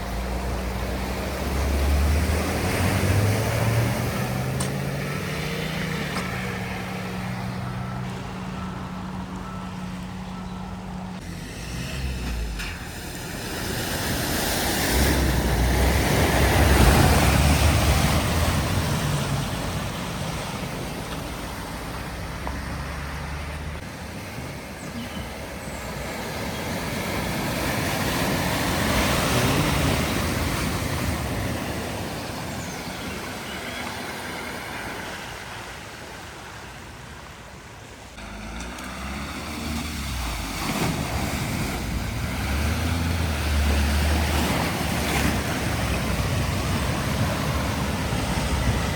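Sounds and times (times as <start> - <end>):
low engine rumble: 0.0 - 35.0, 37.8 - 48.9
tyres spraying through floodwater: 0.0 - 48.9.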